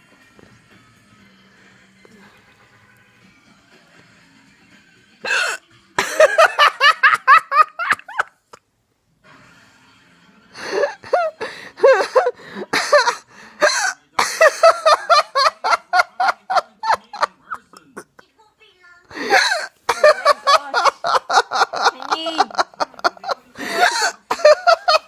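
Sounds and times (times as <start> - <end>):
child giggling: 19.4 - 23.2.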